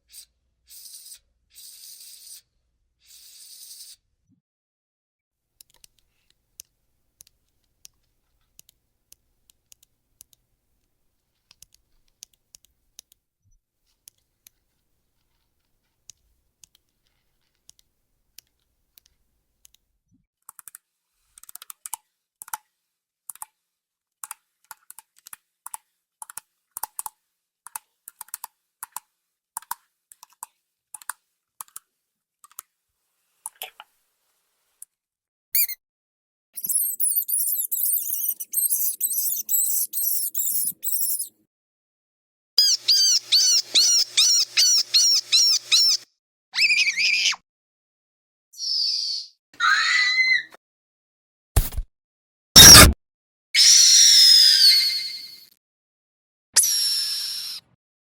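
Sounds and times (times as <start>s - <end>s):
short sharp clicks: 52.6s - 53.0s.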